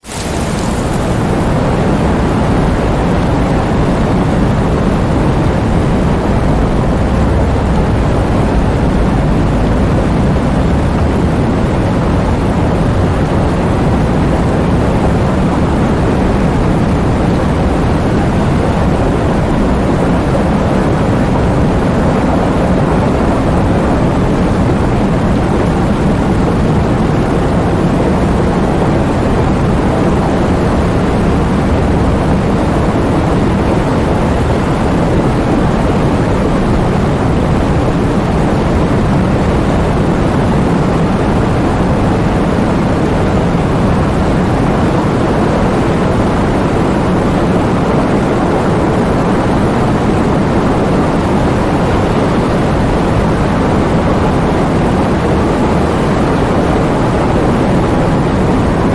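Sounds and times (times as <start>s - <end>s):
rain: 0.0s - 58.9s
deep thunder rumble: 0.2s - 47.2s.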